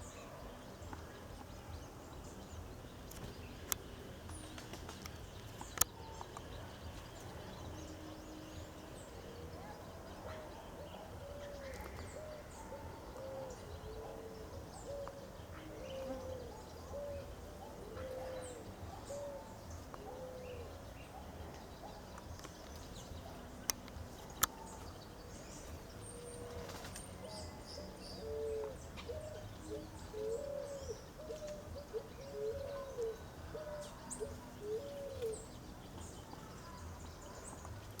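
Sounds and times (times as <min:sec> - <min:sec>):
bird hooting low notes: 0:27.3 - 0:35.5.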